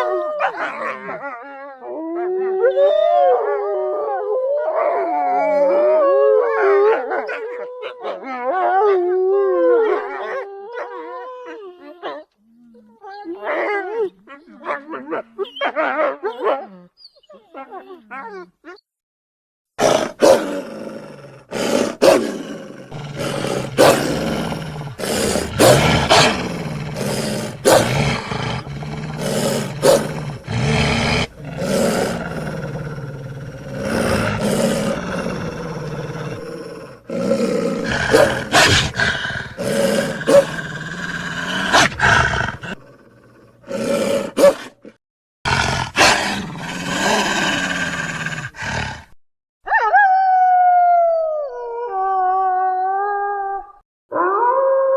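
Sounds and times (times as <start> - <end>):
wolf growling and snarling: 19.8 - 49.2.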